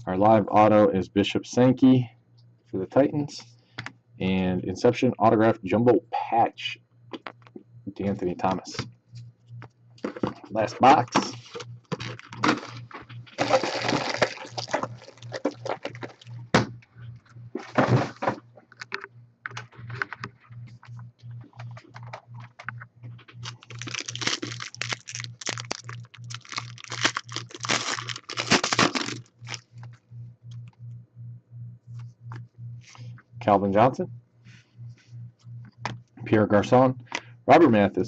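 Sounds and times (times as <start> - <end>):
faint pulsing low hum: 0.0 - 38.0
plastic wrapping crackling and tearing: 11.2 - 16.3, 21.6 - 29.8.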